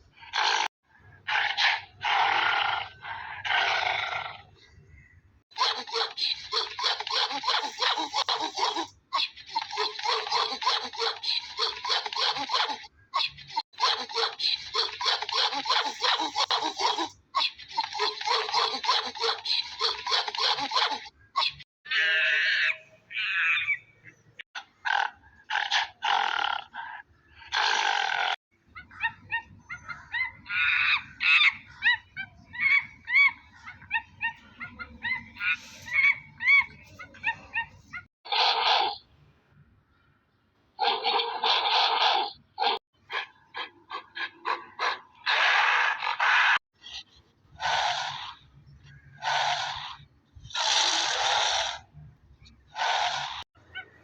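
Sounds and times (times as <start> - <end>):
monkey calls: 5.5 - 39.0, 40.8 - 51.9
monkey rasping screech: 40.8 - 42.8, 45.3 - 48.4, 49.2 - 51.9, 52.8 - 53.4
animal huffing: 52.8 - 53.4.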